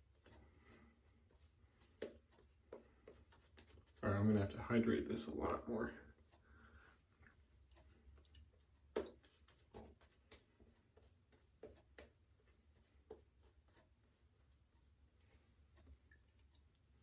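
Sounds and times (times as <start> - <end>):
soft taps and clicks: 7.2 - 14.2.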